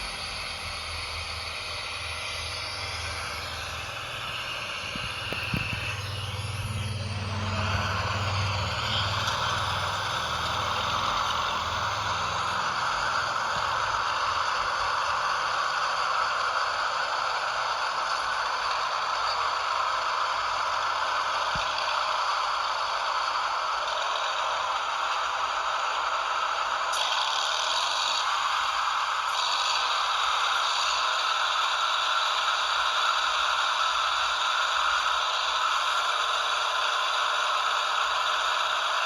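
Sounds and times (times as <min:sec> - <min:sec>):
low hum: 0:00.0 - 0:16.6
toy truck motor whirring: 0:00.0 - 0:39.0.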